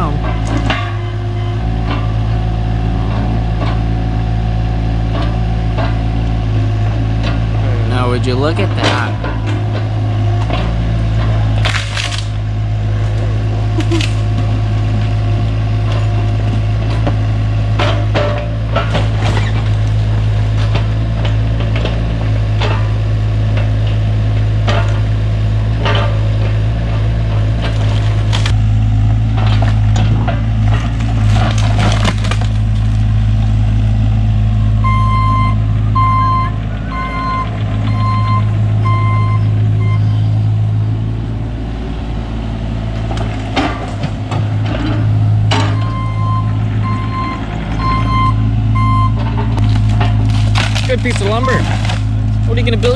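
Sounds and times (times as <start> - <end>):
excavator diesel engine running: 0.0 - 52.9
wood cracking and snapping: 10.4 - 15.1, 17.8 - 22.0, 27.5 - 28.6, 29.3 - 33.5, 49.6 - 52.9
backup alarm beeping: 34.8 - 40.4, 45.7 - 49.2.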